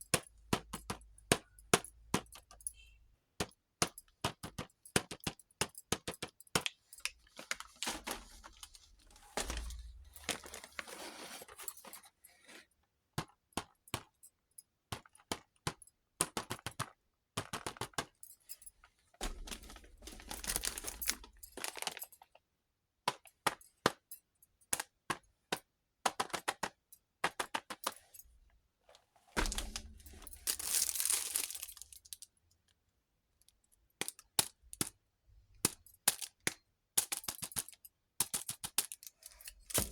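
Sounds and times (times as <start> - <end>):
plastic packaging tearing and crinkling: 19.4 - 22.0, 29.6 - 32.2.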